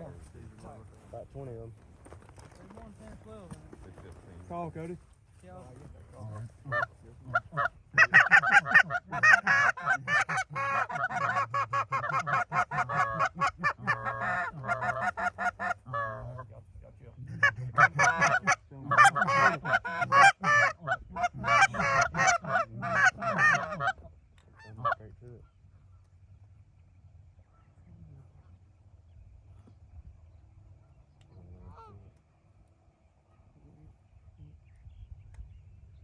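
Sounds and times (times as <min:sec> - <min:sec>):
goose honking and clucking: 0:06.2 - 0:16.6, 0:17.2 - 0:25.5, 0:31.4 - 0:32.2.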